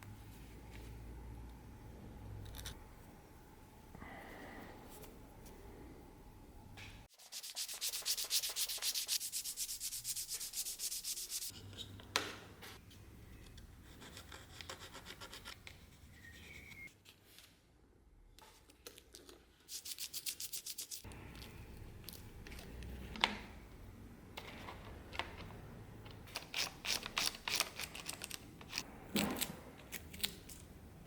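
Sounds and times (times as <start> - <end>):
hand sanding strokes: 7.1 - 11.5.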